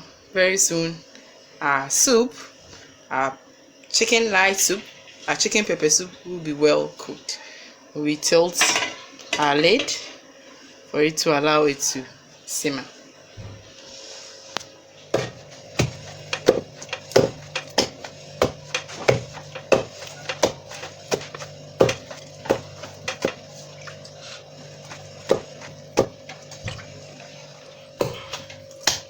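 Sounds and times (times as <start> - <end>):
rhythmic wooden knocking: 15.2 - 23.9.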